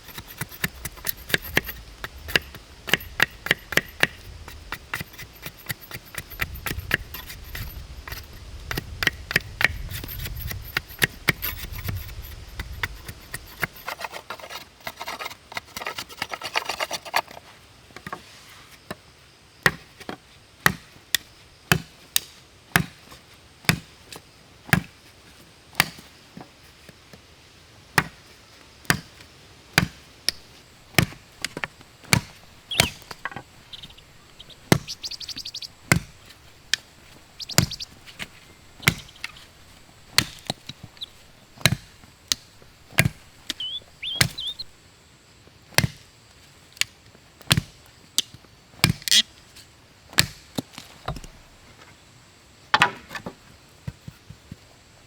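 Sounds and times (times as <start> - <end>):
blade chopping wood: 0.0 - 17.4, 19.6 - 23.0, 23.7 - 23.9, 25.8 - 26.0, 28.0 - 28.2, 28.9 - 29.2, 29.8 - 44.8, 45.7 - 46.0, 46.8 - 49.3, 50.1 - 51.5, 52.7 - 53.4.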